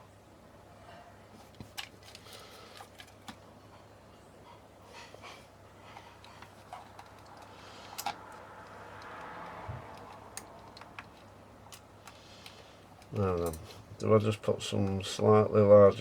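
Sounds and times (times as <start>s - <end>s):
clicks of small parts handled: 6.2s - 13.8s.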